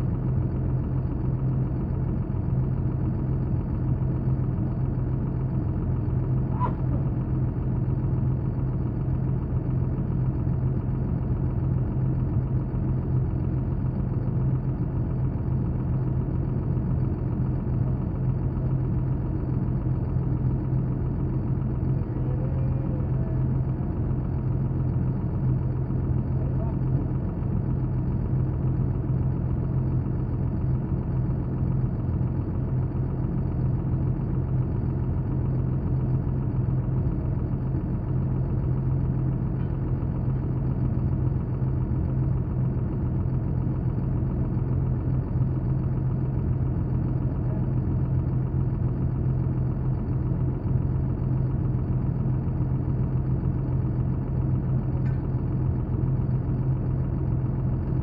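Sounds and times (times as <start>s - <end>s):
diesel engine idling: 0.0s - 58.0s.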